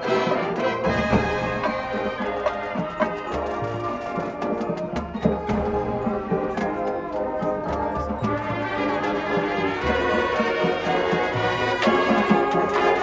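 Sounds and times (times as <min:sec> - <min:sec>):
brass chords: 0:00.0 - 0:13.0
drum and cymbal hits: 0:00.8 - 0:08.5.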